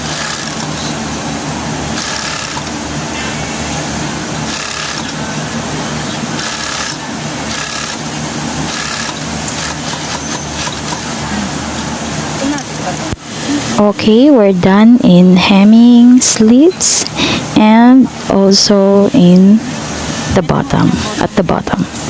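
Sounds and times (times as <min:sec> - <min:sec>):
sewing machine stitching: 0:00.0 - 0:00.8, 0:02.0 - 0:02.7, 0:04.5 - 0:05.2, 0:06.4 - 0:08.1, 0:08.7 - 0:11.1
factory machinery hum: 0:00.0 - 0:22.0.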